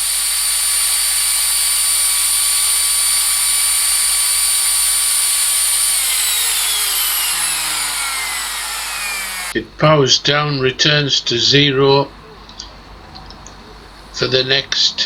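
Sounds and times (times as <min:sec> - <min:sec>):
router motor whining: 0:00.0 - 0:09.6.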